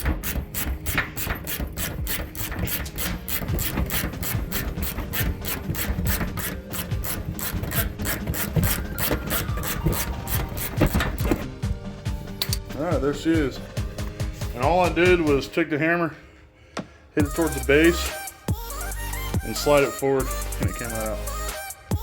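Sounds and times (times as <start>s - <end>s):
ratchet wrench clicking: 0.0s - 11.0s.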